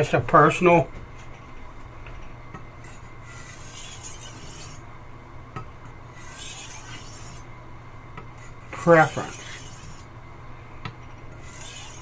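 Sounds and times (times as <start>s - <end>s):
knife rasping on sharpening stone: 2.8s - 4.8s, 6.1s - 7.5s, 8.4s - 10.1s, 11.4s - 12.0s.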